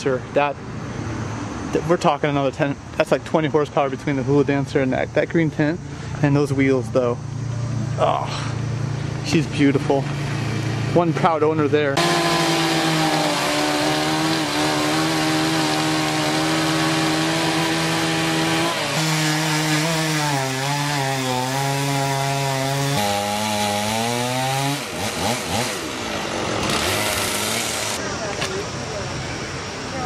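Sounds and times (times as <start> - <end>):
engine running fast: 7.2 - 19.1.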